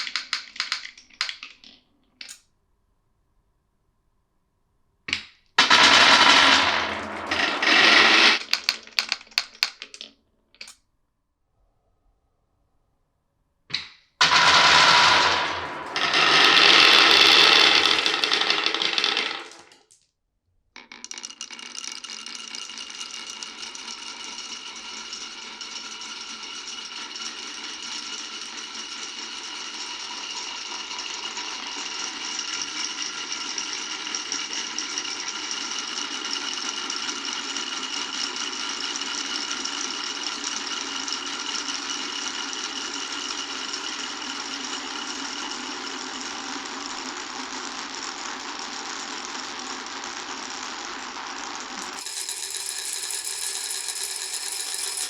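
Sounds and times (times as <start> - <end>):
marbles rolling on wooden run: 0.0 - 1.8, 5.1 - 10.2, 14.2 - 20.0, 20.8 - 55.0
loud burst of noise: 5.6 - 8.4, 14.2 - 18.5.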